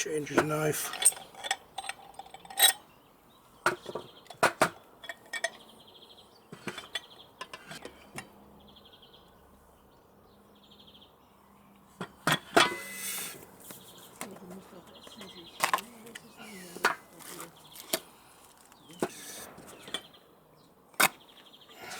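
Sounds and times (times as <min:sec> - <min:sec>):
metal parts clicking and clinking: 0:00.3 - 0:02.8, 0:05.0 - 0:05.6.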